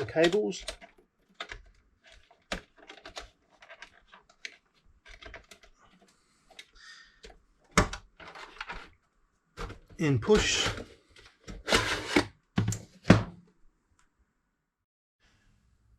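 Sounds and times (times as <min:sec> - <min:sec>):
plastic cable connectors clicking: 0:00.0 - 0:08.9.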